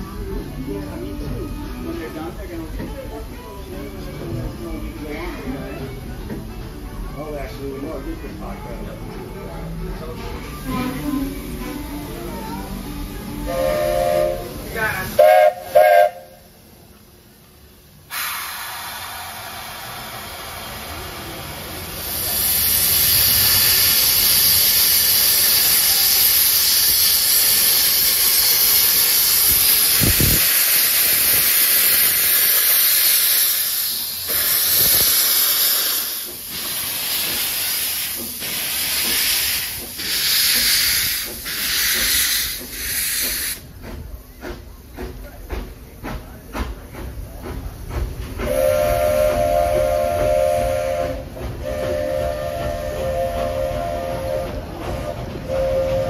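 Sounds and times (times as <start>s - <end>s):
steam locomotive hissing: 0.0s - 56.0s
locomotive chuffing: 18.4s - 56.0s.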